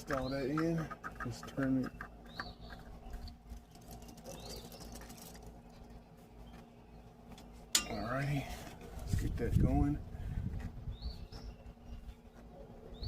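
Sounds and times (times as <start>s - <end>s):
oil filter scratching and rubbing: 0.0s - 6.6s.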